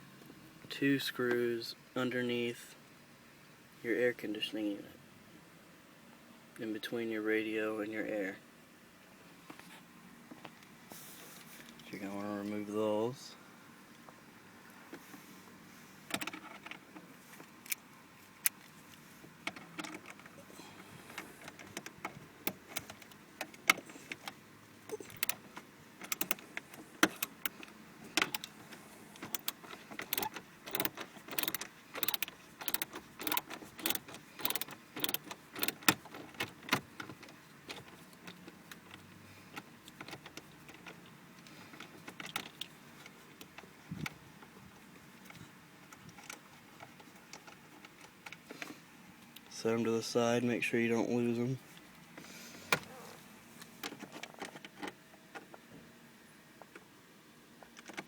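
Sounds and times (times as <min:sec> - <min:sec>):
screwdriver clicking: 0:29.2 - 0:36.0.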